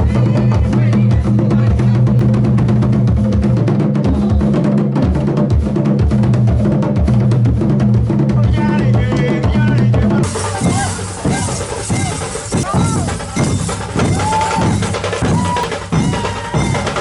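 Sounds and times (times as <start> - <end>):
loud music with drum beat: 0.0 - 17.0
stepping bass line: 0.0 - 17.0.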